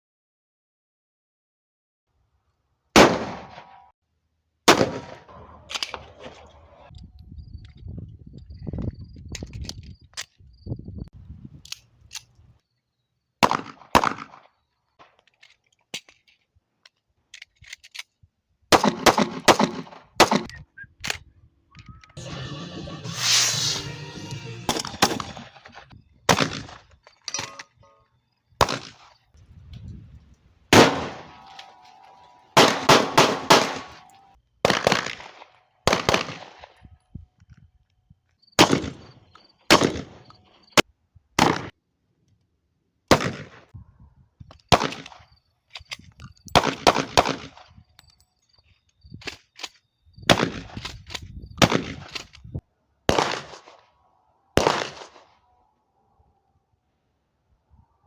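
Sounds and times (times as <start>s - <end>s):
gunshots: 3.0s - 3.9s, 4.7s - 6.5s, 13.4s - 15.1s, 18.7s - 20.5s, 22.2s - 26.9s, 28.6s - 29.2s, 30.7s - 36.8s, 38.6s - 40.3s, 41.4s - 41.7s, 43.1s - 43.7s, 44.7s - 45.2s, 46.5s - 47.7s, 50.3s - 51.0s, 51.6s - 52.3s, 53.1s - 53.8s, 54.6s - 55.4s.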